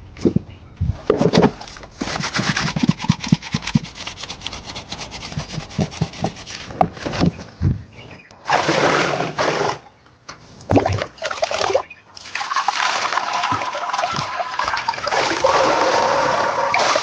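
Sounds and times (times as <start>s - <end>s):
rough scraping and rubbing: 1.0s - 7.5s, 8.1s - 9.8s, 15.1s - 17.0s.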